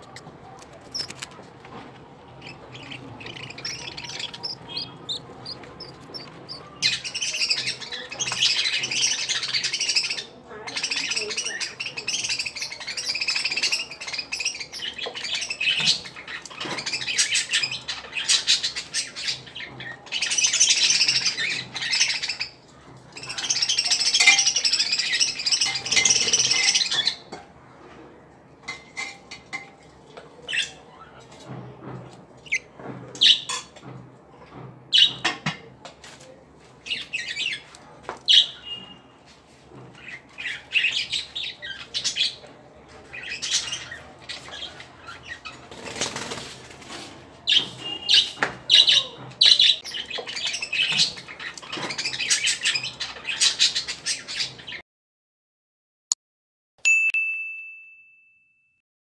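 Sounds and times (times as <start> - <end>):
budgerigars chirping and chattering: 0.0 - 1.4, 2.2 - 27.3, 32.4 - 33.5, 34.9 - 35.3, 36.8 - 39.1, 39.9 - 54.8
ringing ding: 56.9 - 58.8.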